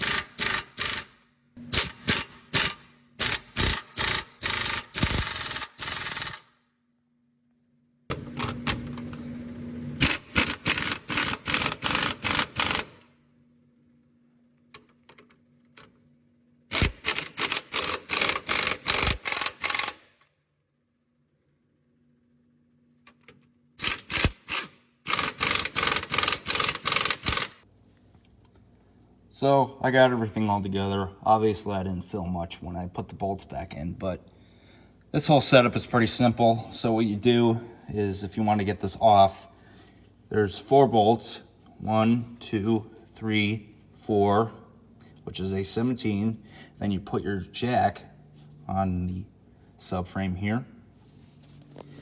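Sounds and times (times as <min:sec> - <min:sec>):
impact wrench bursts: 0:00.0 - 0:06.6, 0:10.0 - 0:13.1, 0:16.7 - 0:20.2, 0:23.8 - 0:27.6.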